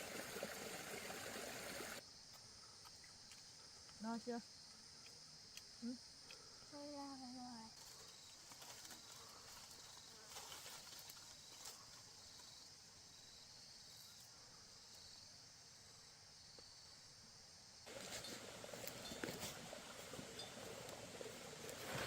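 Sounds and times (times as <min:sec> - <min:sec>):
high-pitched insect chorus: 0:00.0 - 0:22.0
faint ticks and taps: 0:05.0 - 0:06.5.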